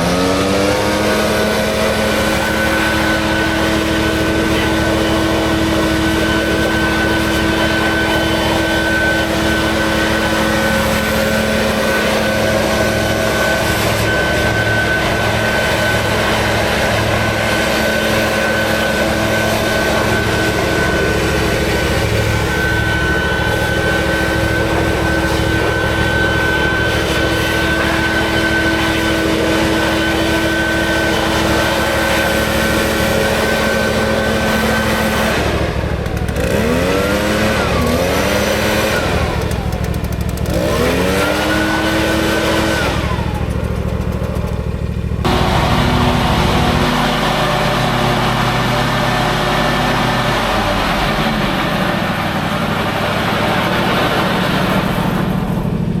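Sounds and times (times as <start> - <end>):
lawn mower engine running: 0.0 - 56.0.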